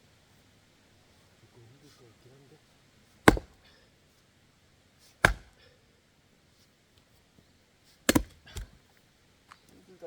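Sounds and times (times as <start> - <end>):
axe striking a log: 3.2 - 3.8, 5.2 - 5.6, 8.1 - 8.8.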